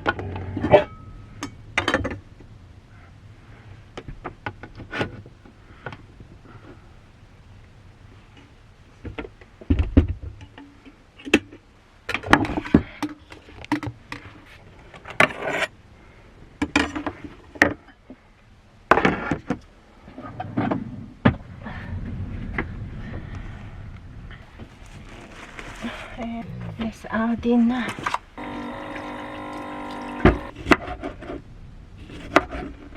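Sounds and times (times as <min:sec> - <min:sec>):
low steady rumble: 0:00.0 - 0:32.9
objects being handled: 0:24.4 - 0:26.9.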